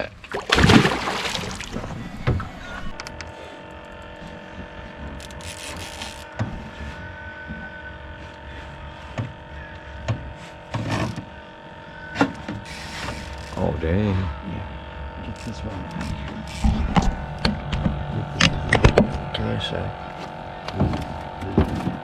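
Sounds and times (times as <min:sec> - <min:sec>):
electric motor humming: 0:00.0 - 0:11.4, 0:12.4 - 0:22.0.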